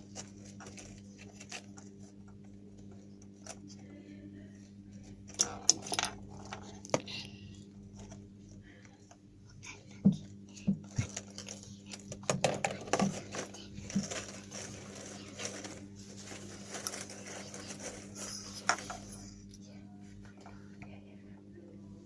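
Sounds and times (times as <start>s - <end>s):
steady low hum: 0.0s - 22.0s
small hard objects knocking: 10.1s - 17.9s.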